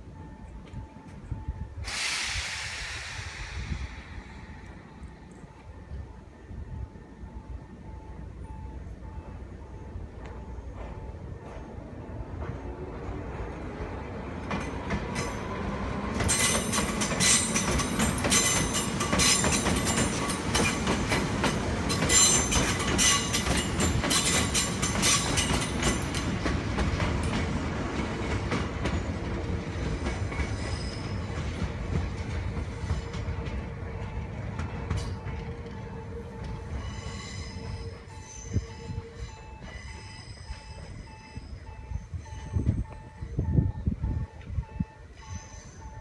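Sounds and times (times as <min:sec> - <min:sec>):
train wheels clattering over joints: 0:14.3 - 0:33.8
train wheels squealing: 0:14.6 - 0:26.6, 0:30.0 - 0:46.0.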